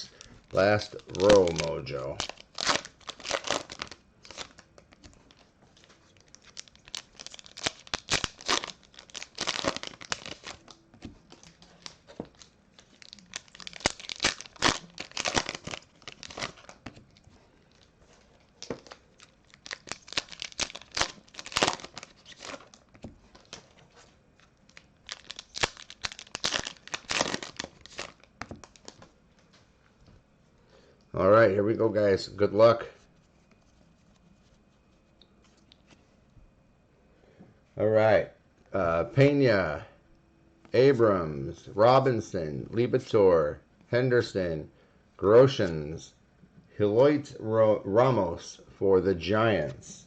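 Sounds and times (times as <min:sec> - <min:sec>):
foil wrappers tearing and crinkling: 0:00.0 - 0:05.4, 0:06.1 - 0:17.0, 0:17.7 - 0:23.7, 0:24.5 - 0:29.0.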